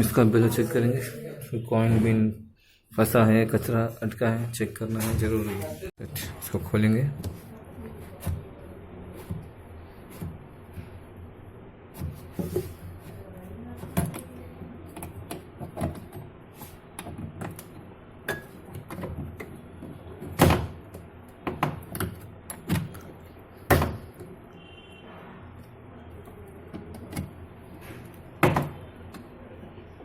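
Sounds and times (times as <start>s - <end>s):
plastic parts clicking and knocking: 13.7s - 24.4s, 26.2s - 29.3s.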